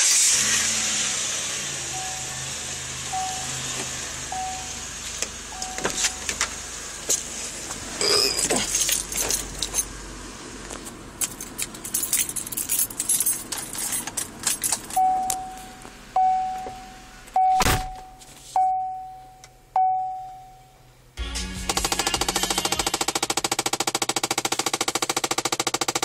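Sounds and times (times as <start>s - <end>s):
car warning chime dinging: 1.9s - 2.5s, 3.1s - 3.6s, 4.3s - 4.8s, 5.5s - 6.4s, 15.0s - 20.9s
keys jangling: 8.4s - 9.9s, 11.2s - 15.0s
thump: 17.6s - 18.1s.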